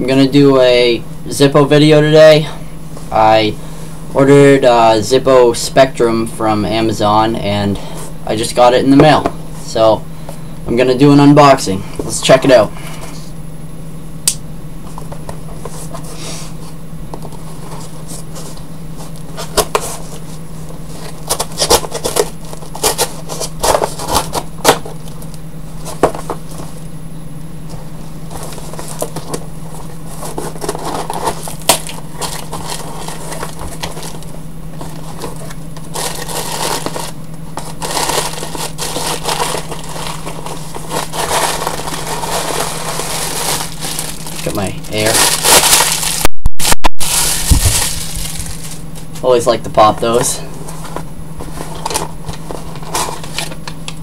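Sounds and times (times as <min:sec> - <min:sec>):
steady low hum: 0:00.0 - 0:46.3, 0:47.0 - 0:54.0
packaging tearing and crinkling: 0:21.0 - 0:25.2, 0:30.1 - 0:49.2.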